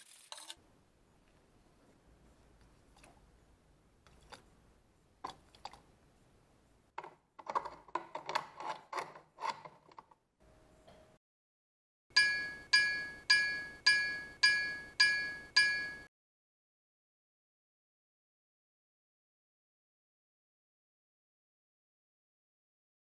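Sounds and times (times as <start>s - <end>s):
ringing metallic strikes: 12.2s - 16.1s.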